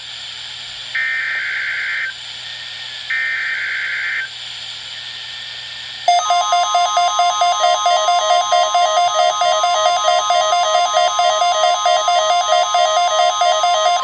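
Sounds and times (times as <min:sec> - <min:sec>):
screechy data tones: 0:06.1 - 0:14.0
warbling electronic alert tone: 0:06.1 - 0:14.0.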